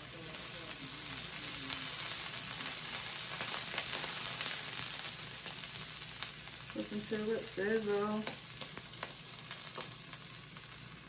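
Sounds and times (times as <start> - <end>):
tacos sizzling in oil: 0.0 - 11.0
crackling oil pops: 8.2 - 10.0.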